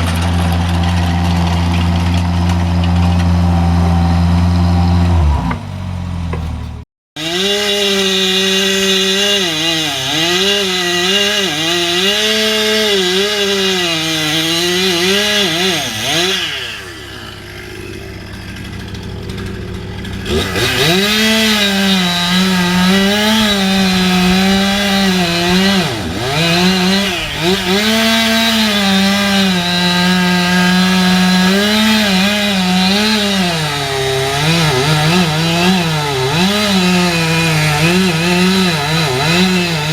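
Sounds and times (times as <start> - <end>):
chainsaw cutting wood: 0.0 - 6.6, 7.2 - 39.9.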